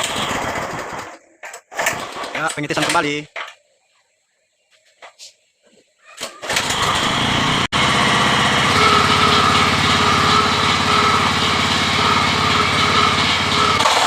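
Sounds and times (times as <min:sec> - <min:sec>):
small engine running: 0:06.4 - 0:14.0.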